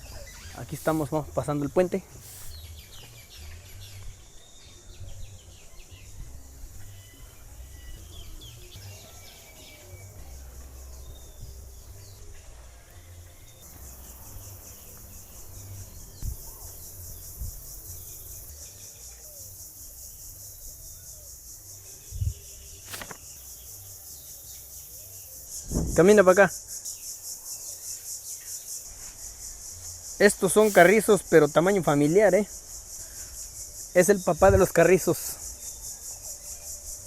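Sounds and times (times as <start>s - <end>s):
insects trilling: 0.0s - 5.0s, 5.6s - 37.0s
faint bird chirps: 0.0s - 13.7s, 30.2s - 31.2s.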